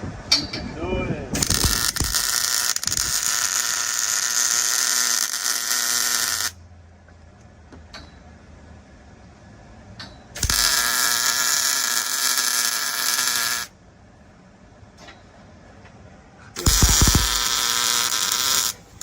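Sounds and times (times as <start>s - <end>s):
arc welding crackling buzz: 1.4s - 6.6s, 10.4s - 13.8s, 16.6s - 19.0s.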